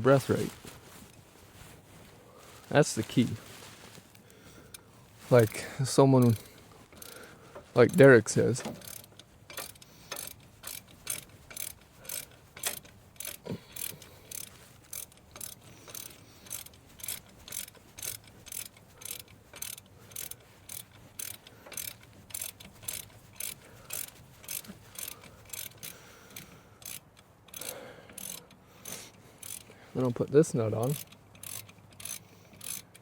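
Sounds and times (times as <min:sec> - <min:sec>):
ratchet wrench clicking: 0:06.2 - 0:29.7, 0:30.8 - 0:33.0.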